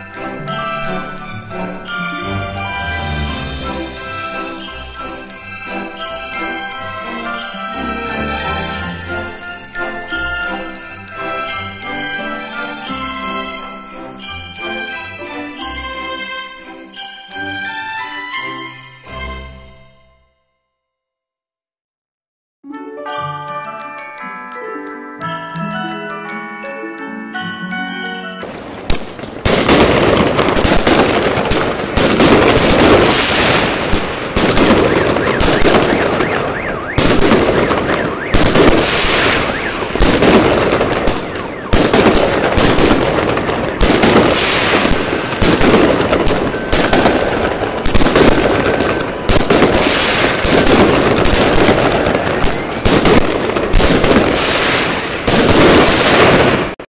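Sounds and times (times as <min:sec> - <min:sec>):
fireworks crackling and hissing: 0:00.0 - 0:15.9, 0:28.4 - 0:56.8
fireworks bangs: 0:28.4 - 0:56.9.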